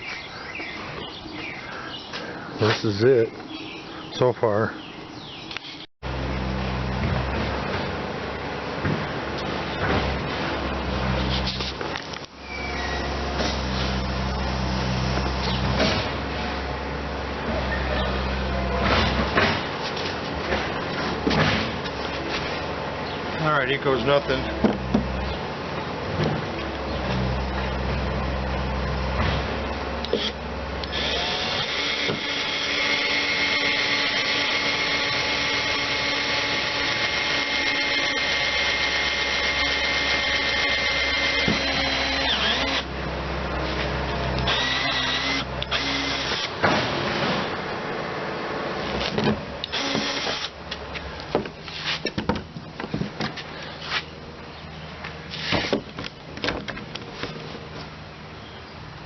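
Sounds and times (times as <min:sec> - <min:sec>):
small electric motor whining: 0:30.1 - 0:42.9, 0:44.4 - 0:46.5, 0:49.7 - 0:50.6.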